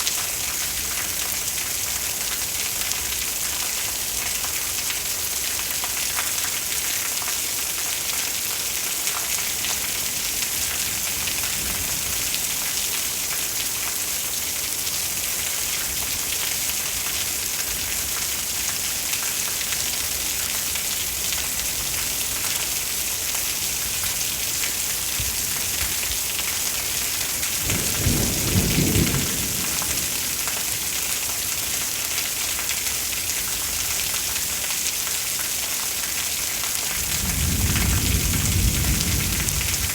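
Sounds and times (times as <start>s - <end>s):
steady rain: 0.0s - 39.9s
low rumble of thunder: 25.1s - 30.9s, 36.9s - 39.9s.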